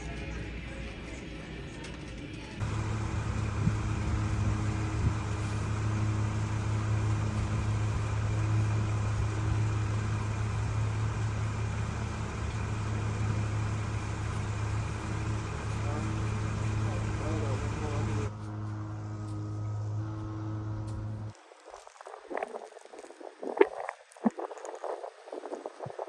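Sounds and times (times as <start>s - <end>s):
car engine hum: 2.6s - 21.3s
road noise hiss: 2.6s - 26.0s.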